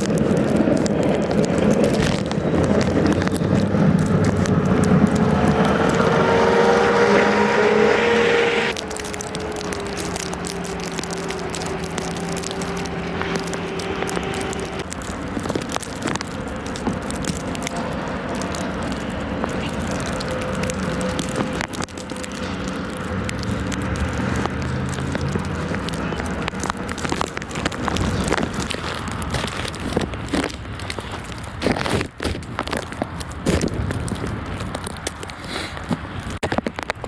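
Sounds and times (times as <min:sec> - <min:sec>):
vehicle engine hum: 0:00.0 - 0:31.8
road noise: 0:00.0 - 0:37.0.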